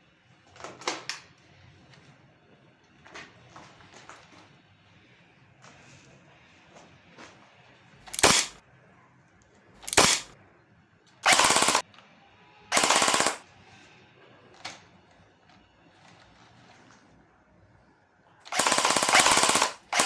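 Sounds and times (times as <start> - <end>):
airsoft gun full-auto bursts: 8.1 - 8.6, 9.8 - 10.3, 11.2 - 11.8, 12.7 - 13.4, 18.5 - 20.0.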